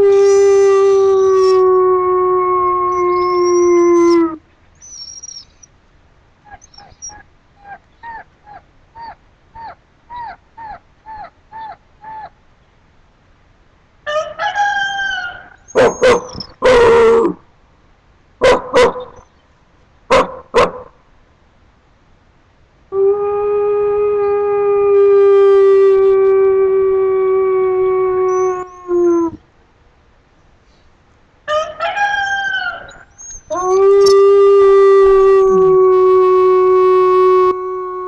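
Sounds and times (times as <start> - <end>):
dog and person howling: 0.0 - 4.4, 23.0 - 29.4, 31.9 - 38.0.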